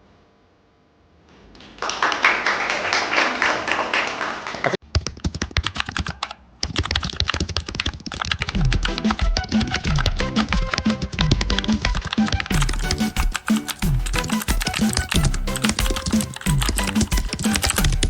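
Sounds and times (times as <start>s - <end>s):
fast typing on keyboards: 5.0s - 18.0s.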